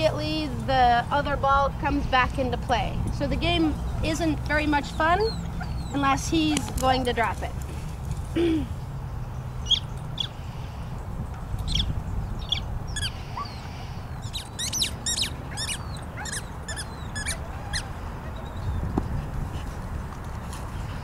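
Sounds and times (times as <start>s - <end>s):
bird chirping: 3.6s - 6.7s, 8.9s - 10.5s, 11.6s - 19.2s.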